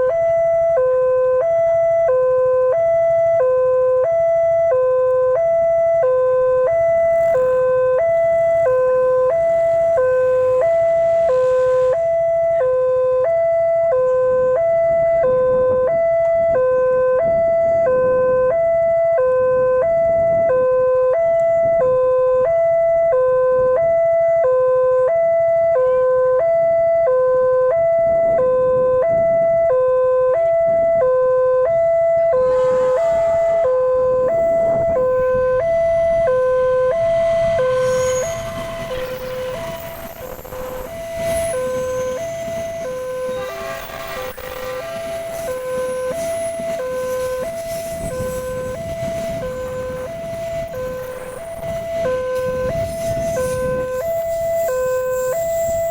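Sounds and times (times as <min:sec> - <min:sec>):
level crossing two-tone alarm: 0:00.0 - 0:55.9.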